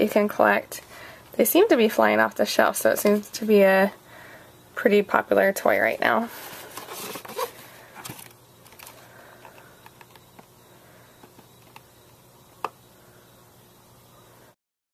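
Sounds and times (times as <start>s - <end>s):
small objects clicking and tapping: 8.7s - 10.5s, 11.2s - 12.8s.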